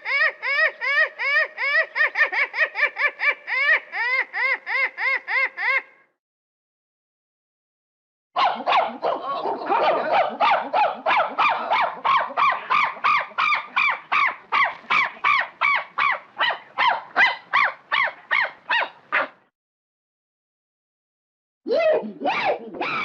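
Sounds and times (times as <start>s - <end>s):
monkey calls: 0.0s - 5.9s, 8.6s - 19.4s, 21.7s - 23.0s.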